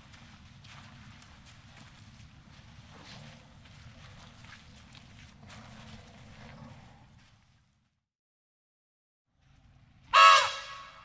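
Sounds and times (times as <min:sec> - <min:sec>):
large animal footsteps crunching: 0:00.0 - 0:08.0.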